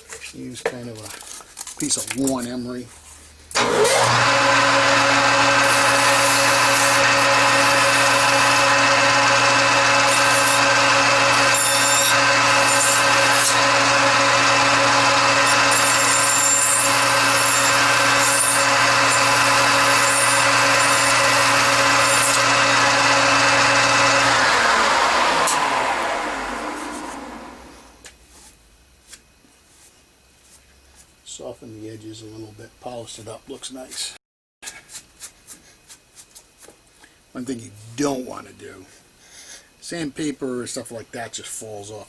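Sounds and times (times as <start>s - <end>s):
metal lathe humming: 3.6s - 28.0s.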